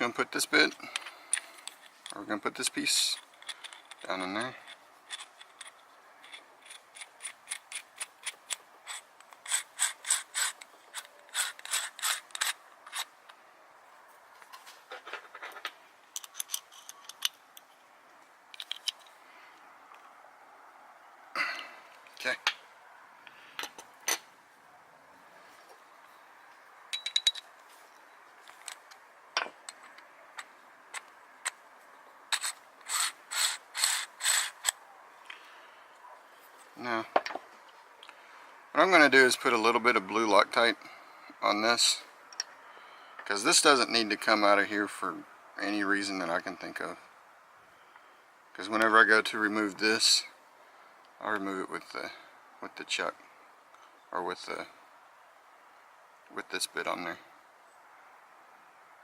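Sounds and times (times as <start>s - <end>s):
small metal parts clinking: 0.7s - 2.3s, 2.9s - 13.1s, 14.9s - 17.7s, 18.5s - 19.2s, 26.9s - 27.5s, 32.3s - 34.8s
metal parts ratcheting and scraping: 0.9s - 13.2s, 14.9s - 17.7s, 18.5s - 19.2s, 32.3s - 34.8s
drill chuck ratcheting clicks: 32.3s - 34.8s.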